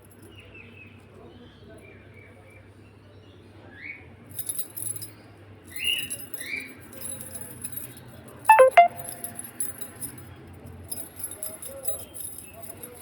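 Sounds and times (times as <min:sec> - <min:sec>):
short high chirps: 0:08.5 - 0:09.4
small bell jingling: 0:08.5 - 0:10.0, 0:10.9 - 0:13.0.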